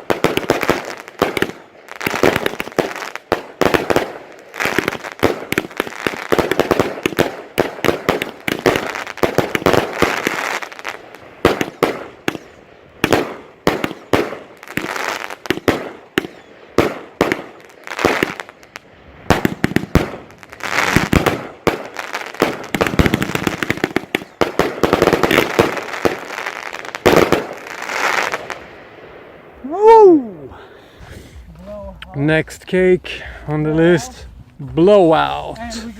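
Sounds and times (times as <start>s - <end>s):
firework cake shots and bangs: 0.0s - 10.4s, 11.4s - 18.5s, 19.2s - 26.3s, 27.0s - 28.6s.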